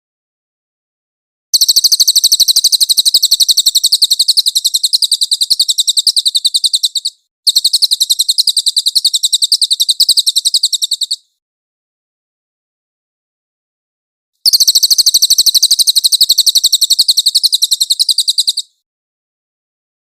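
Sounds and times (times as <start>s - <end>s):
songbird trilling: 1.6s - 11.3s, 14.4s - 18.8s.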